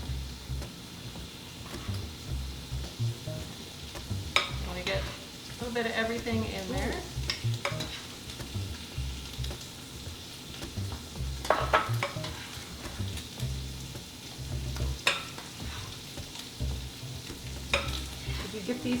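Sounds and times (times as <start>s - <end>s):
chicken sizzling in a pan: 0.0s - 19.0s
utensils clinking against dishes: 3.4s - 9.7s, 11.4s - 13.4s, 14.8s - 16.6s, 17.2s - 19.0s.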